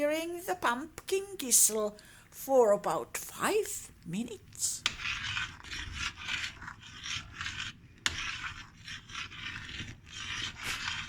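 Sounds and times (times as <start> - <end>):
spoon scraping bottom of pot: 4.7 - 11.0.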